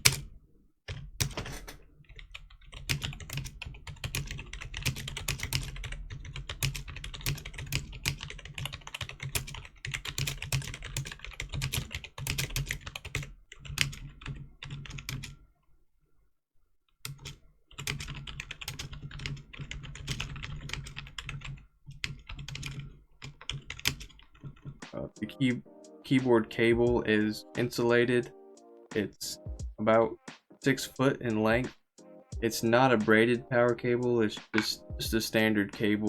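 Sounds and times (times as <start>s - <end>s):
fast typing on keyboard: 0.0s - 15.4s, 17.1s - 24.9s.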